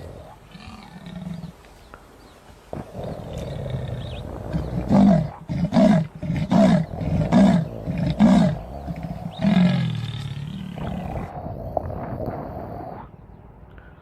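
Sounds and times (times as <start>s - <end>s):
leopard rasping call: 2.7s - 13.2s.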